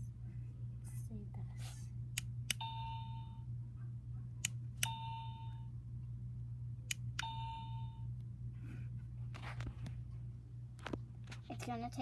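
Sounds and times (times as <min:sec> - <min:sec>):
steady low hum: 0:00.0 - 0:12.0
alarm clock electronic ding: 0:02.6 - 0:03.4, 0:04.8 - 0:05.7, 0:07.2 - 0:08.0.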